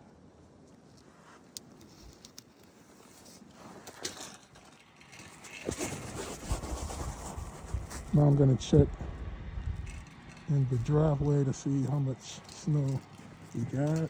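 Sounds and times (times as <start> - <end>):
footsteps crunching in snow: 5.1 - 14.0
scattered clicks: 7.4 - 14.0.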